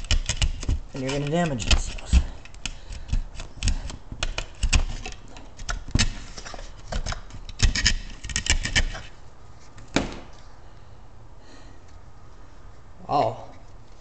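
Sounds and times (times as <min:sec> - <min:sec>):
clicks taps and scraping: 0:00.0 - 0:10.4.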